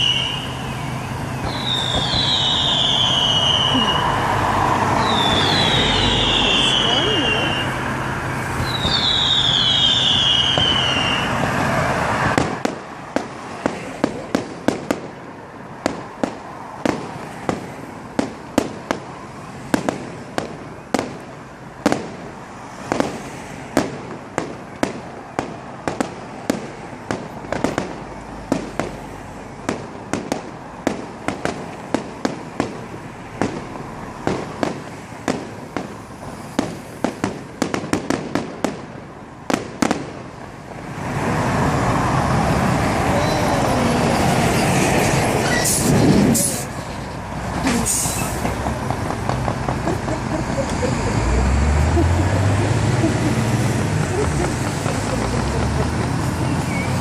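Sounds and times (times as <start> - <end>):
fireworks bangs and cracks: 0.0 - 7.7, 8.5 - 51.0, 53.6 - 57.0
falling firework whistle: 0.0 - 7.8, 8.6 - 11.4, 47.7 - 48.5.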